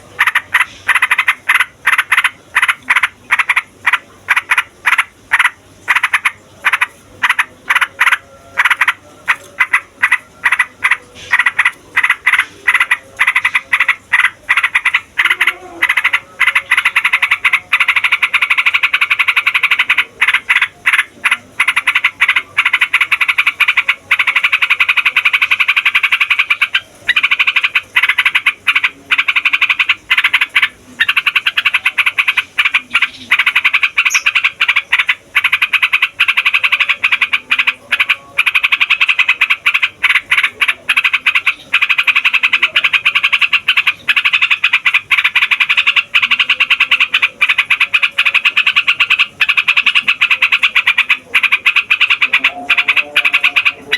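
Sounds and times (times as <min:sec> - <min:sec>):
bulbul singing chattering runs: 0:15.9 - 0:53.9.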